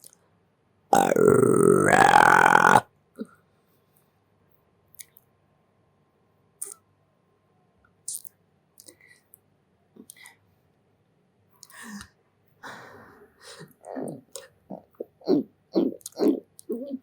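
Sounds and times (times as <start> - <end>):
loud human burp: 0.9 - 2.8.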